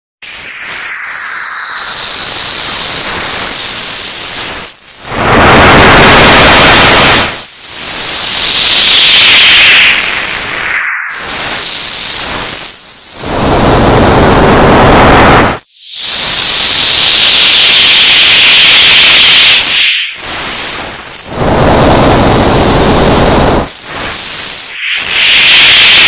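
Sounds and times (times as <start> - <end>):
high whistling tones sweeping: 0.2 - 26.0
white-noise static hissing: 3.9 - 8.4, 12.1 - 15.6.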